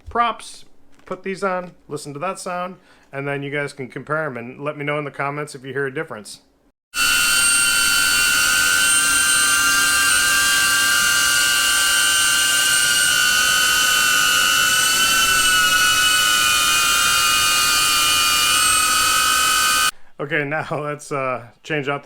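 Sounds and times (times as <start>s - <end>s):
drone propeller whine: 7.0s - 19.9s.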